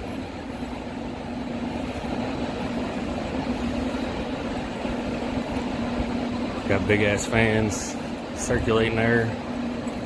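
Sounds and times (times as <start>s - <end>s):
ventilation fans humming: 0.0s - 10.0s.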